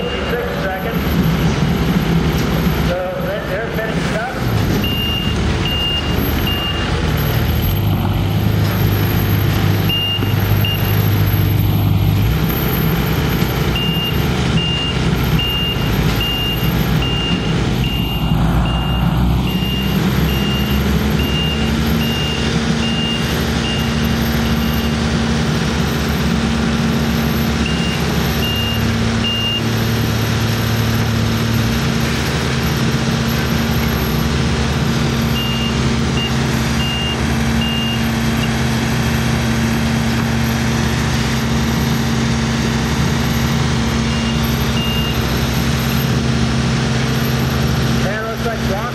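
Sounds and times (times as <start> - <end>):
backup alarm beeping: 0.0 - 1.6, 4.8 - 7.8, 9.8 - 11.3, 13.7 - 25.0, 27.6 - 29.7, 35.2 - 38.6
heavy machinery engines running: 0.0 - 48.9.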